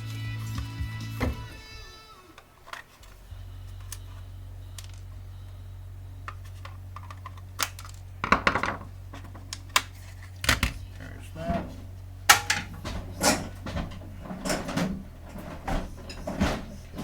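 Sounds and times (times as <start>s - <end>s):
steady low hum: 0.0s - 17.0s
metal parts clicking on workbench: 12.3s - 17.0s.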